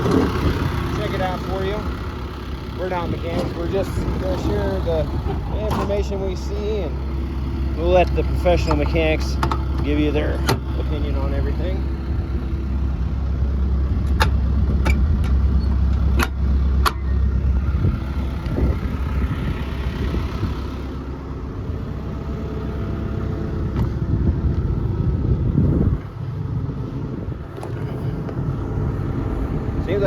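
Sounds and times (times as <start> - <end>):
diesel engine rumbling: 0.0 - 30.0.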